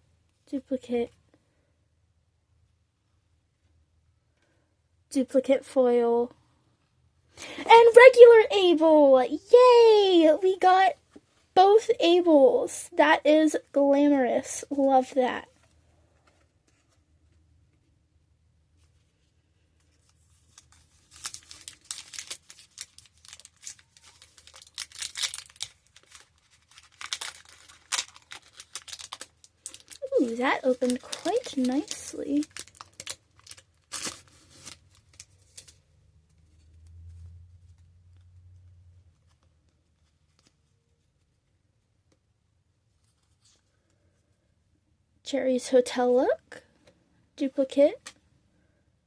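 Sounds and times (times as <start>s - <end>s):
wrapper tearing and crinkling: 20.4s - 35.8s.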